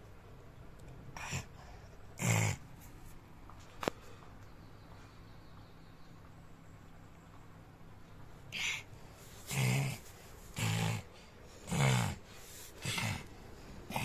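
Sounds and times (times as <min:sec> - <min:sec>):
child pretend snoring: 0:09.5 - 0:11.1, 0:11.7 - 0:13.3.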